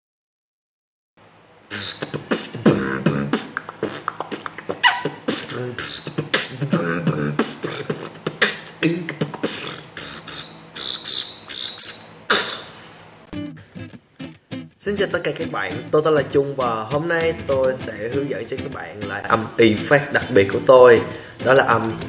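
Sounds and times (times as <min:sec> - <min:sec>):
high whistled chirps: 0:01.7 - 0:02.3, 0:05.8 - 0:06.5, 0:10.0 - 0:13.2
hummed bass line: 0:01.7 - 0:12.1
beatboxing: 0:01.7 - 0:13.1.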